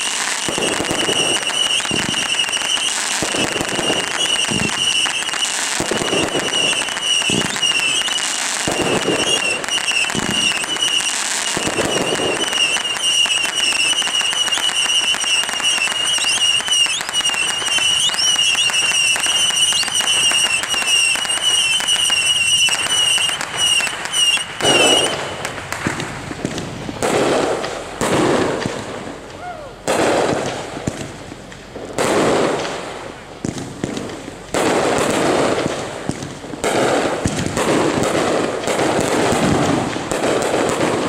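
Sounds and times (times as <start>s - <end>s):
firework whistle: 0.0s - 31.0s
firework bangs: 0.0s - 41.0s
fireworks crackling: 0.0s - 41.0s.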